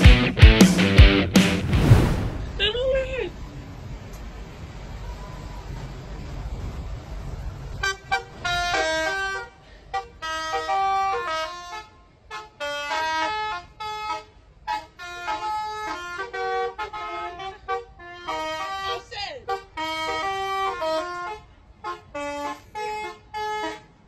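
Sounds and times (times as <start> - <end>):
multi-tone bus air horn melody: 7.8 - 24.0.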